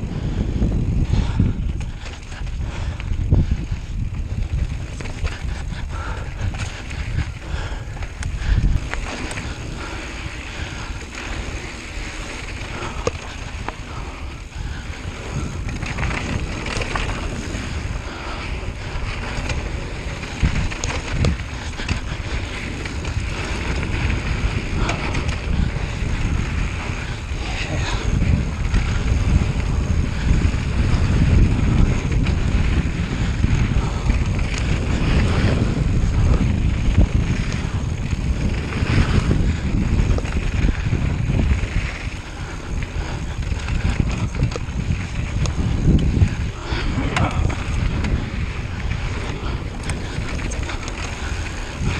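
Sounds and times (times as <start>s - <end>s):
wind buffeting microphone: 0.0s - 51.9s.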